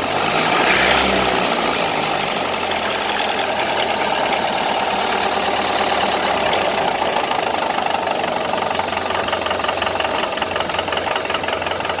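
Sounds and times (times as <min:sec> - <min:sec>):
car engine idling with a knock: 0:02.6 - 0:12.0.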